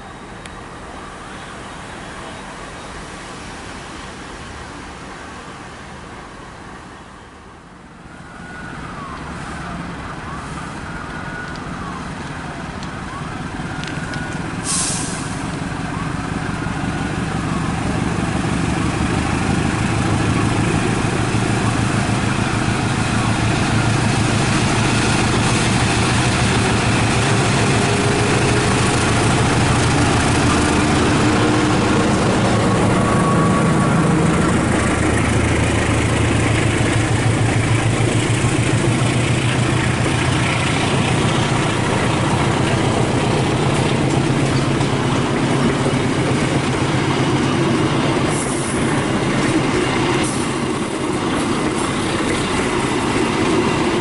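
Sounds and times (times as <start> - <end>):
diesel engine hum: 8.9 - 54.0
train wheels clattering over rails: 34.0 - 54.0.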